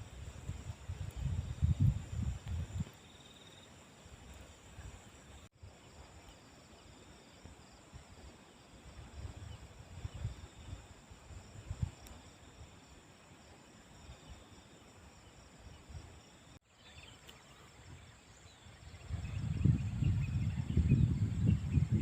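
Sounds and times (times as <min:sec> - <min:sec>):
wind buffeting microphone: 0:00.0 - 0:03.0, 0:08.8 - 0:12.6, 0:17.8 - 0:22.0
crickets and insects chirping: 0:00.0 - 0:22.0.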